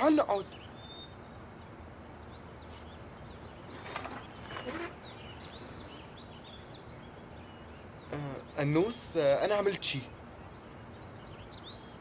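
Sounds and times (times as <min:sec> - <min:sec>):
small birds chirping: 0:00.0 - 0:12.0
steady background hiss: 0:00.0 - 0:12.0.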